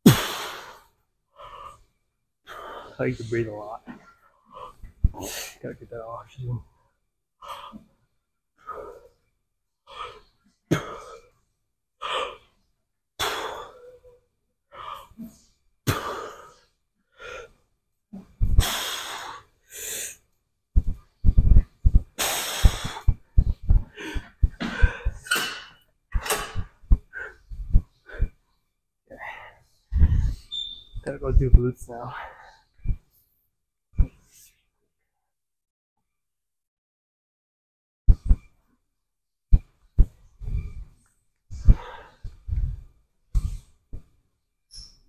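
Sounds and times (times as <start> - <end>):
man breathing hard: 18.5 - 20.2, 20.8 - 28.4, 29.1 - 30.5, 39.6 - 43.7.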